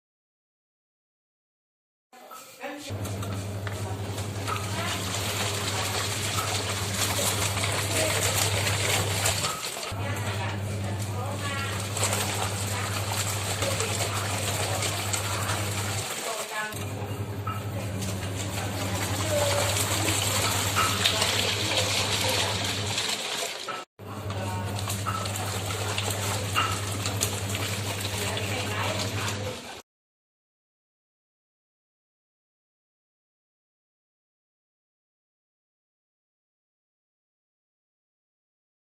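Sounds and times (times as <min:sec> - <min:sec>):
washing machine motor hum: 0:02.9 - 0:29.8
water churning in tub: 0:03.0 - 0:29.8.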